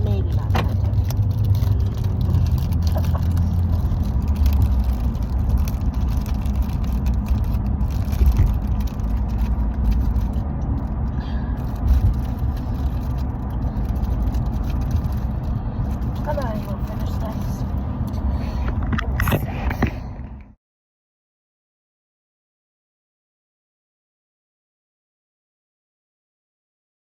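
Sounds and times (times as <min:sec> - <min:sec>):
car interior engine and road noise: 0:00.0 - 0:20.6.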